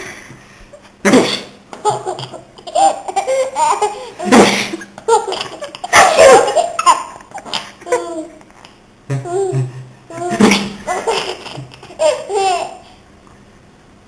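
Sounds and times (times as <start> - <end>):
baby giggling: 1.8 - 8.4, 9.1 - 12.8.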